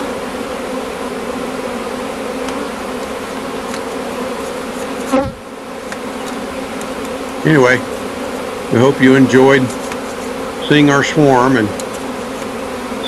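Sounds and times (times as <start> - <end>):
bees buzzing: 0.0 - 13.0.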